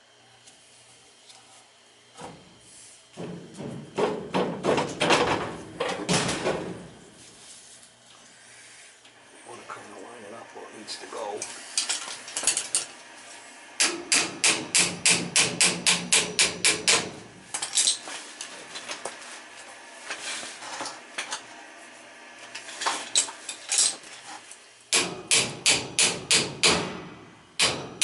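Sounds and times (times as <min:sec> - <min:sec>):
hammer tapping metal: 0:13.8 - 0:17.1, 0:24.9 - 0:26.9.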